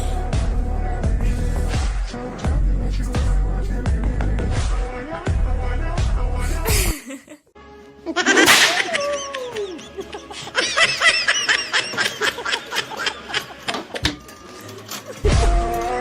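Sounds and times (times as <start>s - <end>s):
music: 0.0s - 16.0s
high-pitched laughter: 8.0s - 14.0s.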